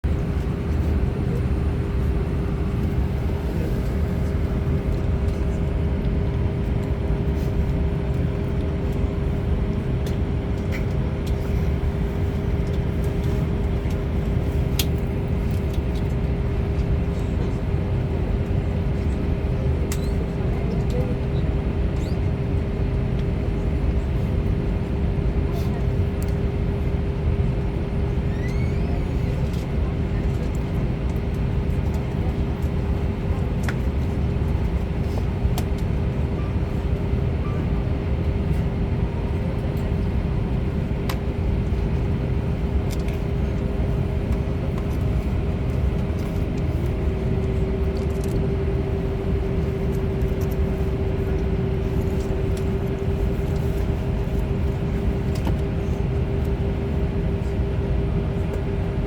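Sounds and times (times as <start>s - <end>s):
low engine rumble: 0.0s - 59.0s
mid-pitched mechanical whine: 27.5s - 31.2s.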